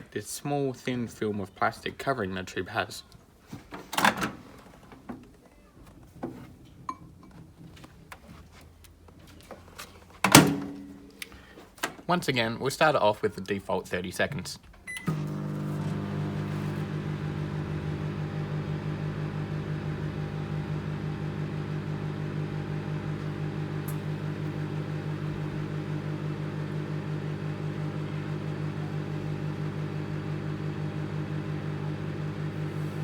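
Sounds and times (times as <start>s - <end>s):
microwave oven humming: 14.9s - 33.0s.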